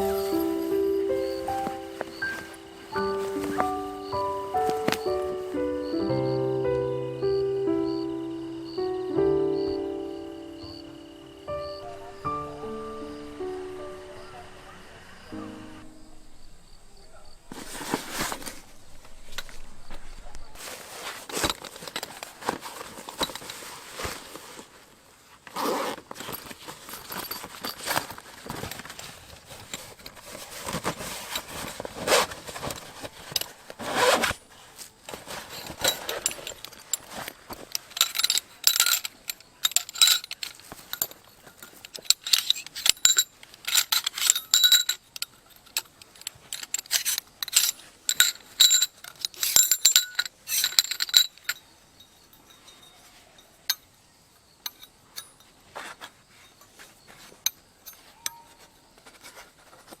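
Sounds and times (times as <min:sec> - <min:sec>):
metallic clinks and rattles: 0:00.0 - 0:05.5, 0:15.8 - 0:20.7, 0:21.3 - 0:24.1, 0:26.1 - 0:34.4, 0:35.1 - 0:59.4.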